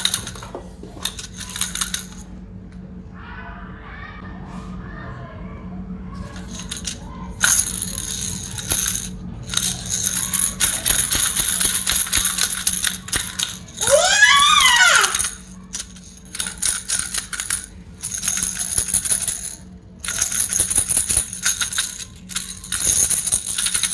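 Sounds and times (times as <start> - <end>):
plastic baby rattles shaking: 0.0 - 2.2, 6.3 - 23.9
pitched toy sound: 9.9 - 16.4.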